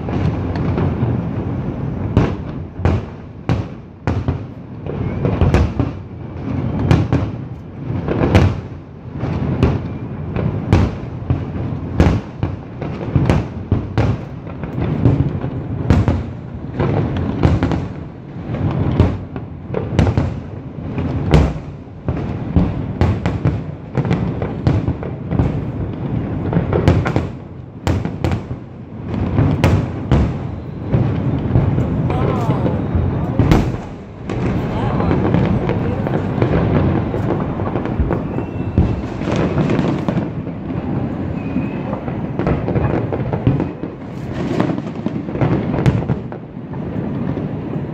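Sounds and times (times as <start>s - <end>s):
fireworks bursting and crackling: 0.0s - 47.9s
rolling rumble: 30.7s - 43.6s.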